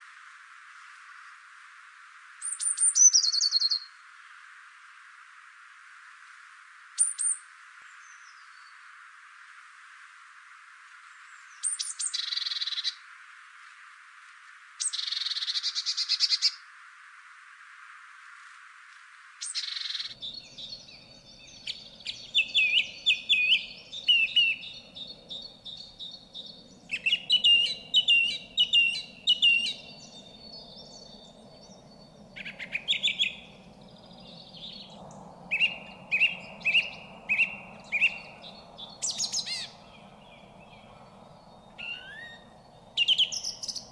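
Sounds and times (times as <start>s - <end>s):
songbirds singing: 2.4s - 4.4s, 7.0s - 9.0s, 11.0s - 13.1s, 14.8s - 16.6s, 19.4s - 43.9s.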